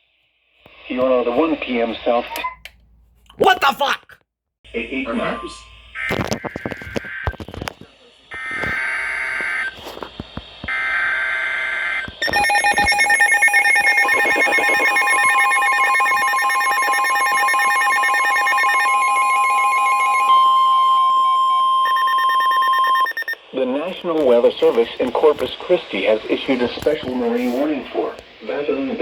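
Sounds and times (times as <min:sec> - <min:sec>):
shrill electronic alarm tones: 0:10.7 - 0:23.4
steady warning alarm tone: 0:10.7 - 0:23.4.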